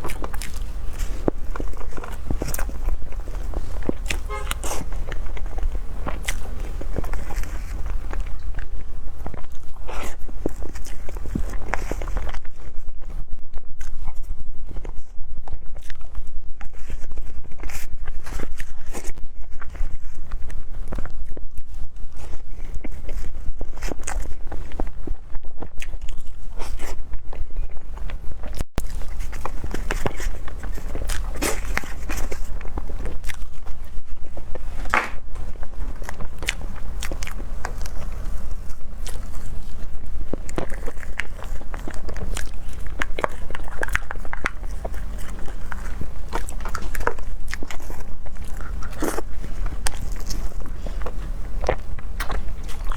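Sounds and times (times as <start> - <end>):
wet mouth clicks: 0.0 - 12.5
chewing with soft crunches: 0.0 - 52.9
steady low hum: 0.0 - 52.9.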